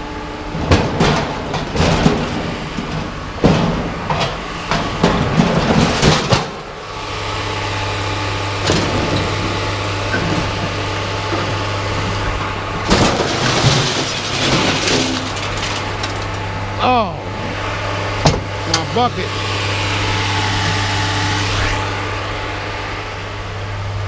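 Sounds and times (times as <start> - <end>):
scrap metal clanking: 12.9 - 16.5
low engine hum: 14.8 - 24.0.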